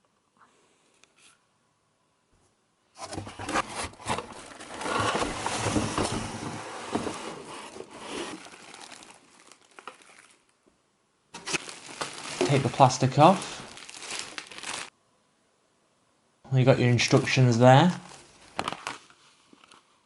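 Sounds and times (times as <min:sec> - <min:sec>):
plastic packaging crinkling: 0:03.5 - 0:10.6, 0:11.4 - 0:14.9, 0:17.0 - 0:19.8.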